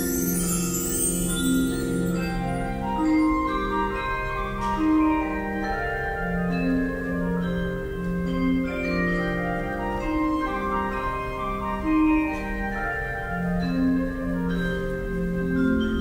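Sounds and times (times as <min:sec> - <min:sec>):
wind band playing: 0:08.8 - 0:15.9.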